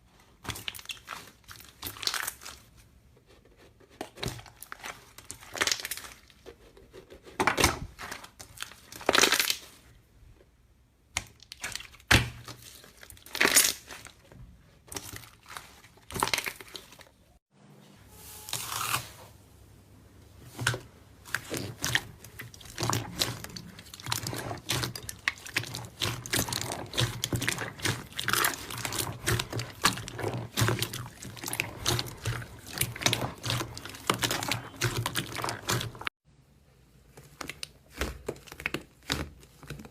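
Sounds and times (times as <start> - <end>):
slime crackling and popping: 4.6 - 6.3, 8.0 - 9.7, 11.1 - 14.2, 21.3 - 36.1.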